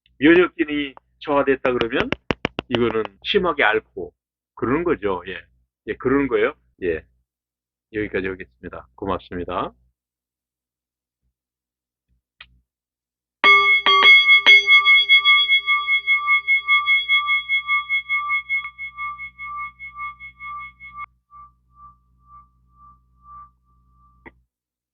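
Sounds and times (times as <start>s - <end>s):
bell-like chime ringing: 13.4s - 24.3s.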